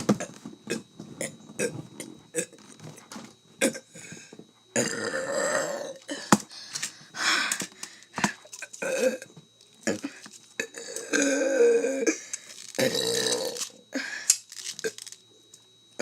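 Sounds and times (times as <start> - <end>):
man burping: 0.1 - 2.6, 3.6 - 4.2, 4.8 - 6.4, 8.6 - 14.1.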